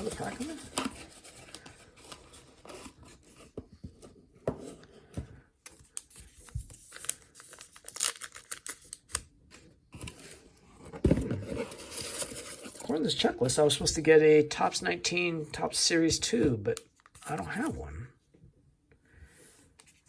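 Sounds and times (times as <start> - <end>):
paper packaging crinkling: 0.0 - 3.5, 5.8 - 9.3, 11.4 - 13.3.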